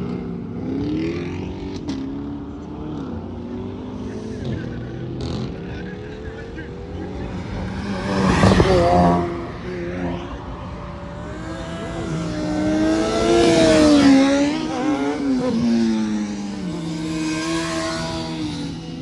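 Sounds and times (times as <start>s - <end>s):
car engine accelerating past: 6.6s - 19.0s.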